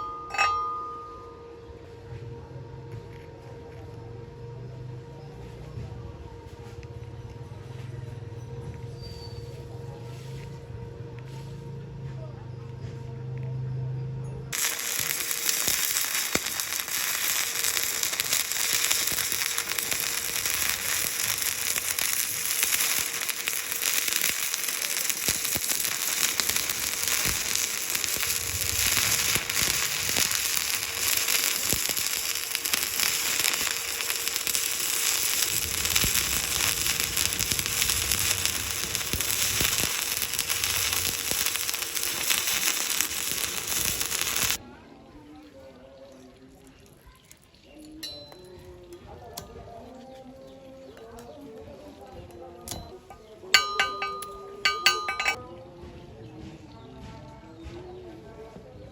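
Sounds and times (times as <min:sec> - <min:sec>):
welding arc crackling and sizzling: 0:14.5 - 0:44.6, 0:53.5 - 0:55.4.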